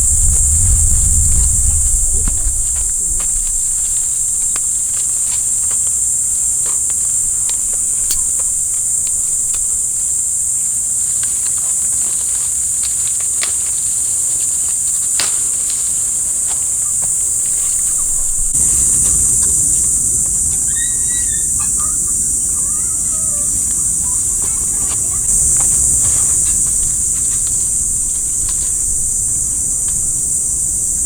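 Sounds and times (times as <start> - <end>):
insects droning in chorus: 0.0 - 31.0
light clicks and snaps: 2.7 - 9.8.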